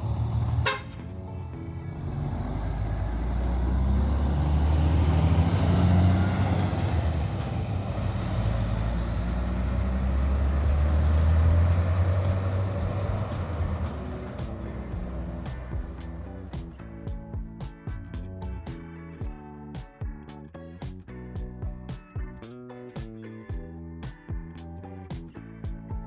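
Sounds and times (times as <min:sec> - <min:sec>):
large vehicle engine droning: 0:00.0 - 0:17.1.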